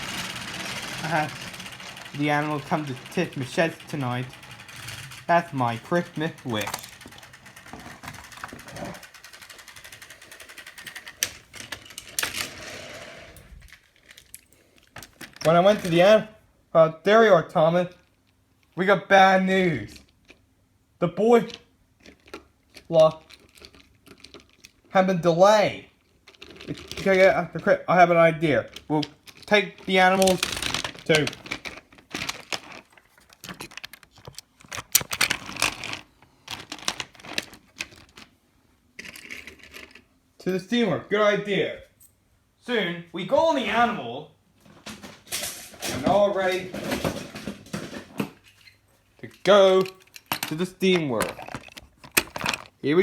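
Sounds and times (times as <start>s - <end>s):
toy train clicking on track: 0.0s - 13.4s, 29.0s - 31.6s.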